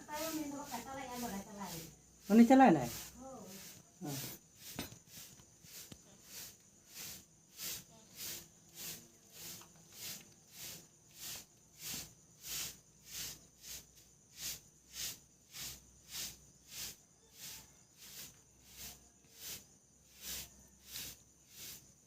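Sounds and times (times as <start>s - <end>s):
insect hissing pulses: 0.0s - 22.0s.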